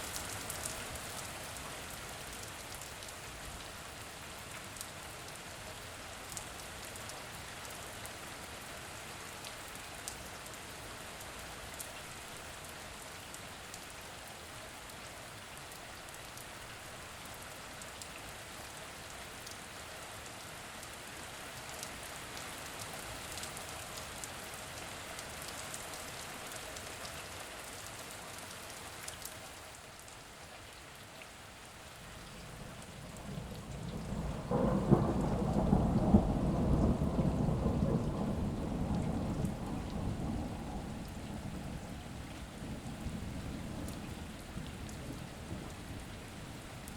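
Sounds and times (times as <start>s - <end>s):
steady rain falling: 0.0s - 46.9s
raindrop ticks: 32.3s - 43.2s.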